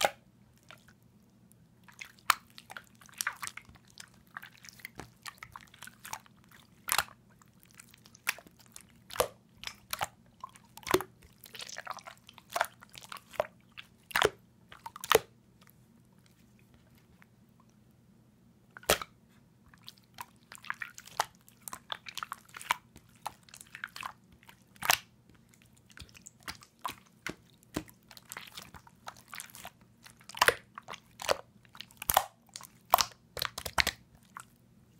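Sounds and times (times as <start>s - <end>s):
faint low hum: 0.0s - 34.9s
slime squeezed clicking and popping: 26.0s - 34.0s.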